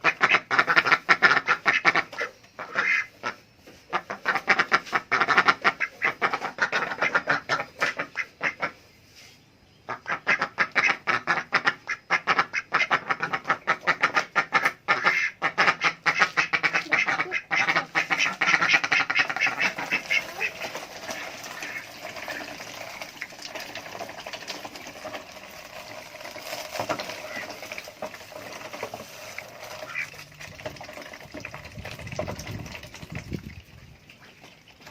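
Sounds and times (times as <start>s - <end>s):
ducks quacking: 0.0s - 8.8s, 9.8s - 22.8s, 26.8s - 27.8s, 28.4s - 30.3s.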